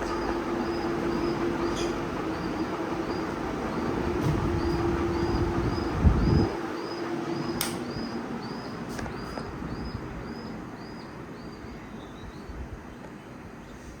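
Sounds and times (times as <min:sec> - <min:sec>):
ceiling fan electrical hum: 0:00.0 - 0:14.0
sharp click: 0:07.6 - 0:07.9.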